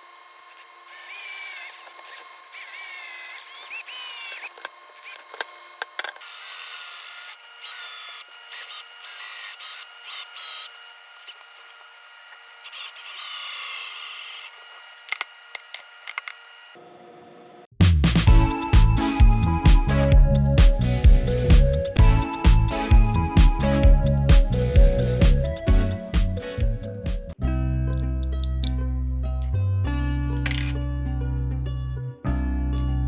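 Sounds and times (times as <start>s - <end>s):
electric drill whining: 0.0s - 5.6s, 6.2s - 16.8s.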